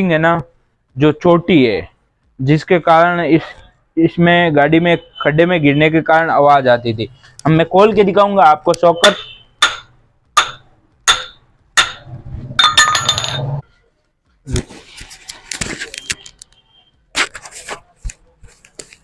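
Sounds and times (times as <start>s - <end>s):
metallic ringing: 9.0s - 13.6s
metal clanks and rattles: 9.6s - 13.6s
metal tools clinking and tapping: 12.6s - 13.6s.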